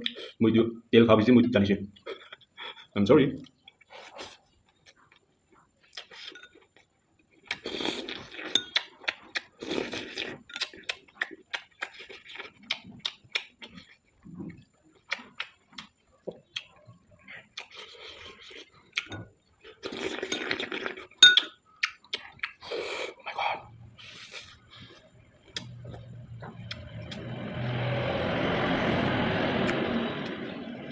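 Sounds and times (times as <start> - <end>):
spoon clinking on a plate: 6.3 - 6.6, 8.4 - 8.8, 21.2 - 21.6
eating noises: 7.4 - 27.2.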